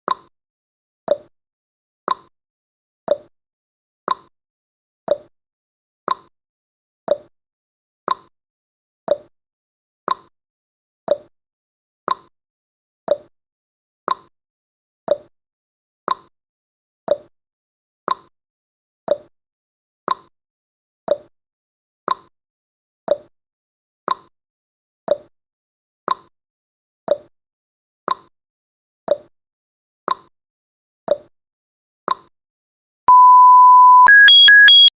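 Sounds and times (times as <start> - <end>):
timer beep: 33.1 - 34.9.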